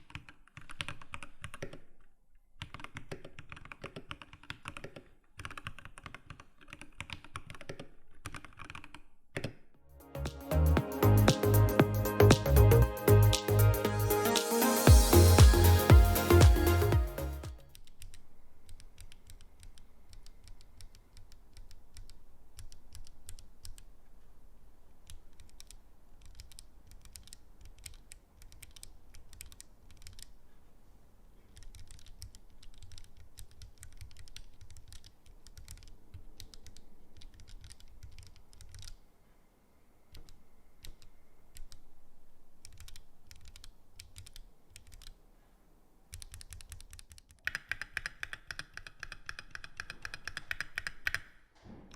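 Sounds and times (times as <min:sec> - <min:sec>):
mechanical keyboard typing: 0:00.0 - 0:02.0, 0:02.6 - 0:09.6, 0:17.8 - 0:23.9, 0:25.0 - 0:30.4, 0:31.5 - 0:39.0, 0:42.6 - 0:45.2, 0:46.1 - 0:51.3.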